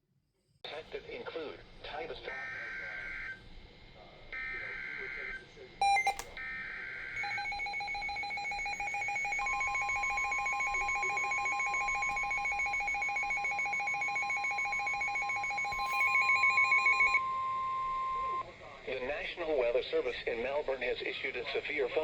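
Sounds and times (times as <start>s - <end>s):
steady alarm tone: 4.4s - 18.5s
two-tone alarm trill: 7.2s - 18.4s.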